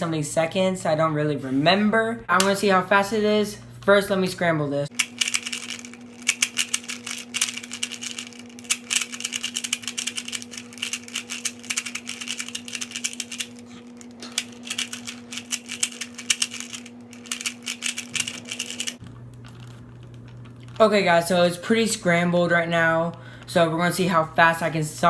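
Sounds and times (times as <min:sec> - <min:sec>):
low steady hum: 0:00.0 - 0:25.0
puzzle cube plastic clicking: 0:05.0 - 0:20.8.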